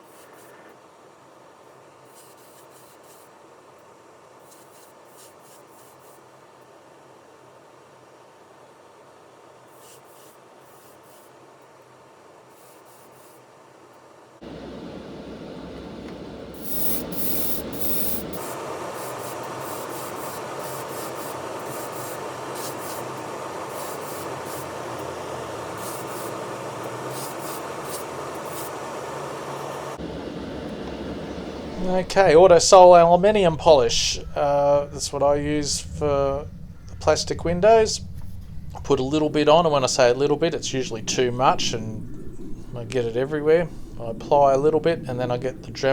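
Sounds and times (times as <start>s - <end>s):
hissing rubbing on model car body: 0.0s - 0.7s, 2.1s - 3.4s, 4.4s - 6.3s, 9.7s - 11.4s, 12.5s - 13.5s, 16.5s - 30.0s.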